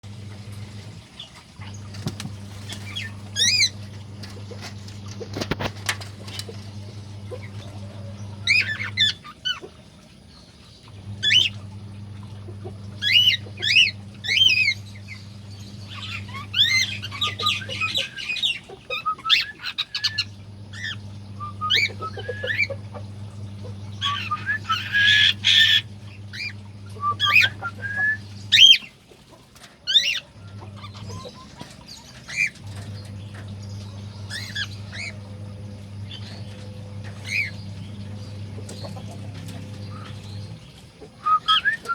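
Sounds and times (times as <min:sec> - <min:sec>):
steady low hum: 0:00.0 - 0:41.9
cockatiels chirping and whistling: 0:02.6 - 0:03.8, 0:08.4 - 0:09.7, 0:13.0 - 0:14.8, 0:15.9 - 0:22.8, 0:24.0 - 0:28.9, 0:29.9 - 0:32.6, 0:34.3 - 0:35.2, 0:37.1 - 0:37.6, 0:41.2 - 0:41.9.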